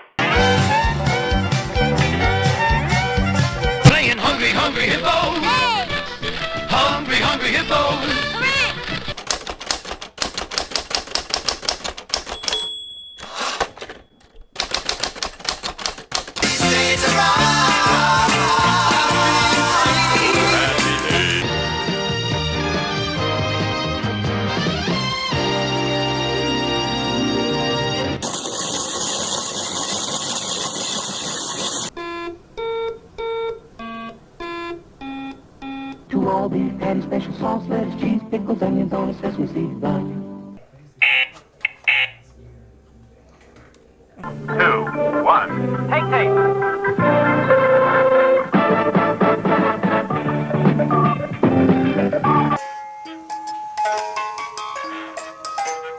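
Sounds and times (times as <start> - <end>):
music: 0.1 - 9.2, 16.4 - 28.2, 36.1 - 40.6, 44.2 - 55.9
loud even hiss: 28.2 - 36.0
short electronic beeps: 31.9 - 36.1.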